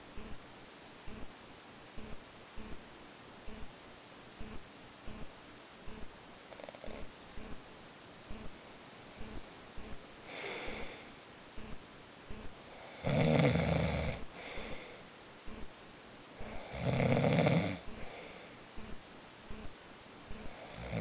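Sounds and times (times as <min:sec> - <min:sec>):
faint breath: 0:09.2 - 0:13.1, 0:14.3 - 0:15.7, 0:17.9 - 0:19.7
person snoring loudly: 0:12.8 - 0:14.9, 0:16.4 - 0:17.9, 0:20.5 - 0:21.0.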